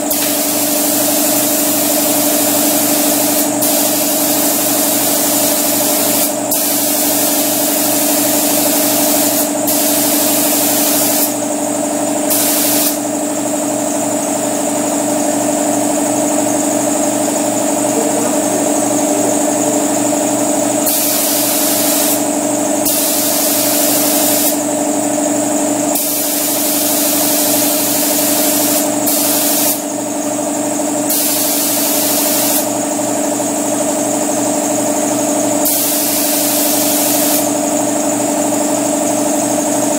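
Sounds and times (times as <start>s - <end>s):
spray gun hissing: 0.0s - 11.4s, 12.3s - 13.0s, 20.8s - 24.6s, 26.0s - 29.8s, 31.1s - 32.7s, 35.6s - 37.6s
air compressor motor humming: 0.0s - 39.9s.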